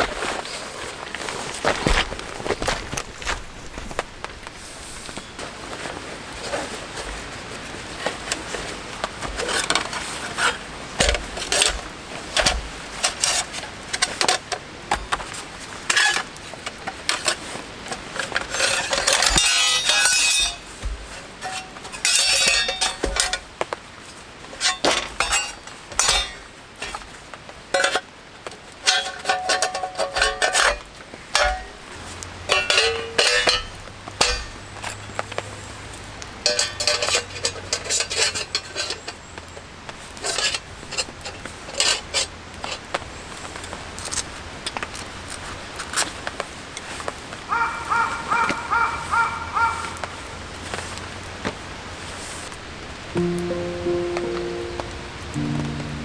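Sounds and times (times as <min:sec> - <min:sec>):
metal cookware clinking: 0:18.6 - 0:20.7, 0:21.4 - 0:23.4, 0:24.6 - 0:26.4, 0:28.8 - 0:30.8, 0:32.4 - 0:34.7, 0:36.4 - 0:39.1.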